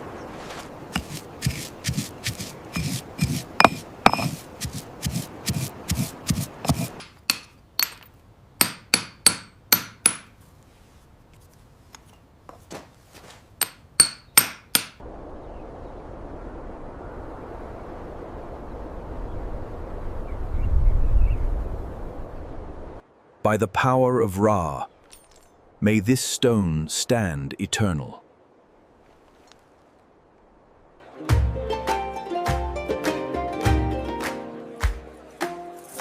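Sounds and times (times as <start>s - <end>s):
hammer striking chisel on stone: 2.8s - 4.4s, 6.7s - 10.3s, 13.6s - 15.0s
ringing taps: 3.6s - 4.3s, 7.3s - 10.3s, 13.6s - 15.0s.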